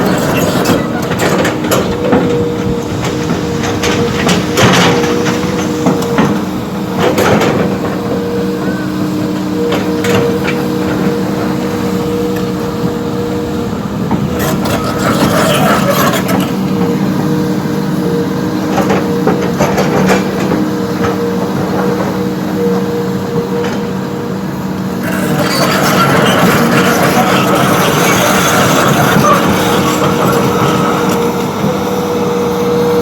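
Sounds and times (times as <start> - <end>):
diesel engine running: 0.0 - 33.0
knocking and clatter: 0.4 - 8.3, 18.7 - 22.2.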